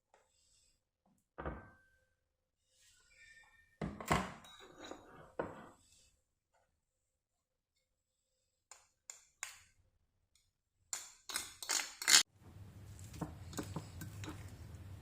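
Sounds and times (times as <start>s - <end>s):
kitchenware thunks and clatter: 3.8s - 5.8s.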